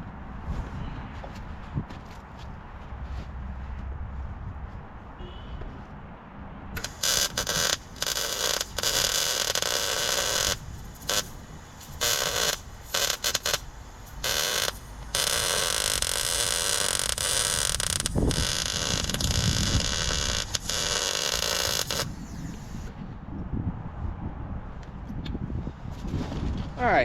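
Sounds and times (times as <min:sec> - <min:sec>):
arc welder crackling and buzzing: 0:06.8 - 0:22.9.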